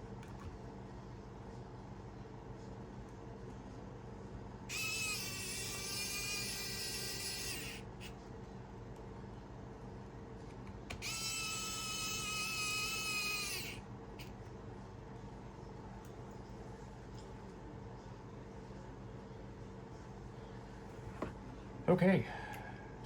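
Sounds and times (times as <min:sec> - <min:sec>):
electric screwdriver whine: 0:04.7 - 0:07.8, 0:10.9 - 0:13.8.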